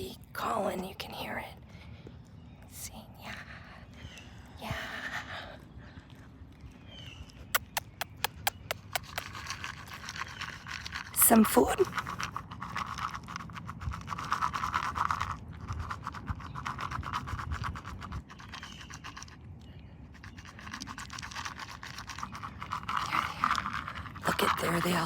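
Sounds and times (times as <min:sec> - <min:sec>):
dry food rattling in a cup: 0:07.6 - 0:19.4, 0:20.0 - 0:25.0.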